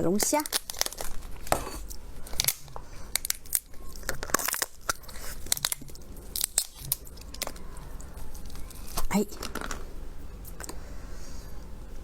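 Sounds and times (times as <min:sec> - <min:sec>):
person chewing crunchy food: 0:00.5 - 0:10.8.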